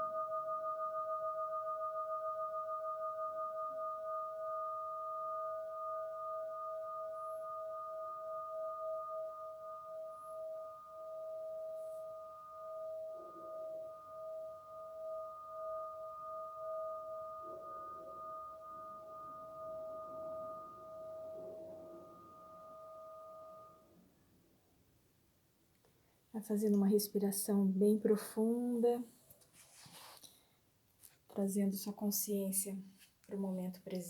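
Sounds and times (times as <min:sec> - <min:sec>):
crystal singing bowl ringing: 0:00.0 - 0:24.1.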